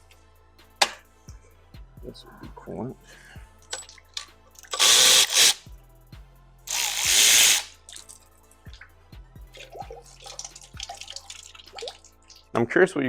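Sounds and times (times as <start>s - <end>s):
cordless power tool running: 4.8s - 5.6s, 6.7s - 7.7s.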